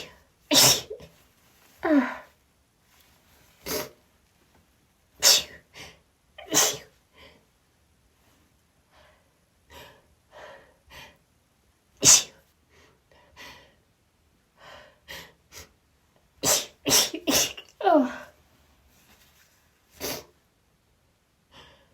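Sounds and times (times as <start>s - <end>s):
woman sneezing: 0.0s - 1.1s, 5.2s - 5.6s, 6.4s - 7.0s, 16.4s - 18.3s.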